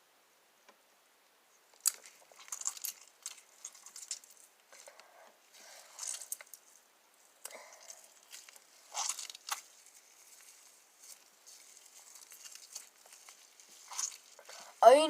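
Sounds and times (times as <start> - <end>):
sticky slime crackles: 1.7 - 15.0.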